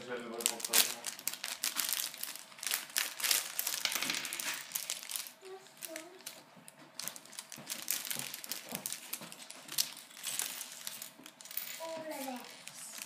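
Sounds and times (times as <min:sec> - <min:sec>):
plastic packaging crinkling: 0:00.2 - 0:13.0
hard plastic pieces clicking: 0:07.0 - 0:11.8.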